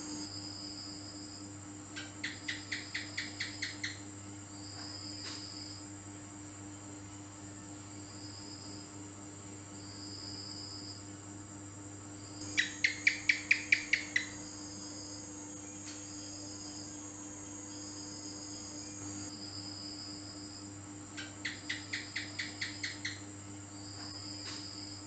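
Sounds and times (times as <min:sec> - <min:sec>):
gecko chirping: 0:02.2 - 0:04.0, 0:12.4 - 0:14.4, 0:21.2 - 0:23.2.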